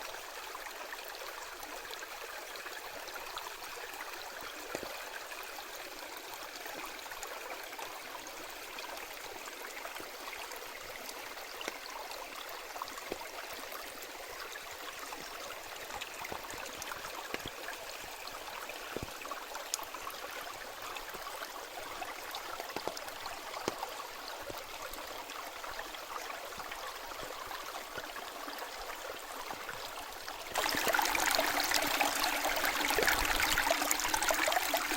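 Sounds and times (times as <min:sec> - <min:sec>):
mountain stream babbling: 0:00.0 - 0:34.9
water splashes and drips: 0:09.7 - 0:34.9.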